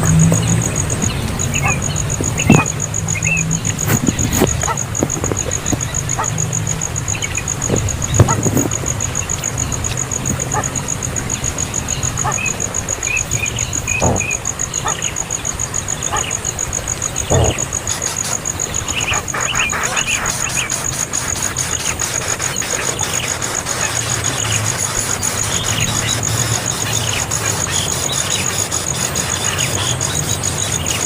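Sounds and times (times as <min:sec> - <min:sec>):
bird chirps: 0:00.0 - 0:31.0
insect trilling: 0:00.0 - 0:31.0
low knocks: 0:14.0 - 0:14.5, 0:17.3 - 0:17.8.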